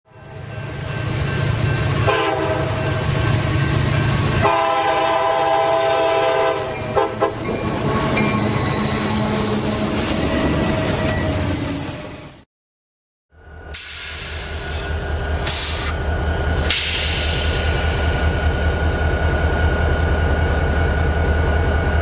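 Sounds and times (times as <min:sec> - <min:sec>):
locomotive air horn: 0:02.0 - 0:02.9, 0:04.4 - 0:07.5.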